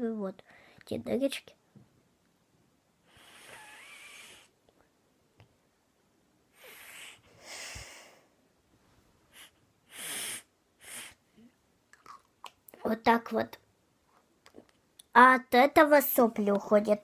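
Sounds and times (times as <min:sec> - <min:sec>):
person sniffing deeply: 0:03.1 - 0:04.5, 0:06.6 - 0:08.3, 0:09.3 - 0:11.2.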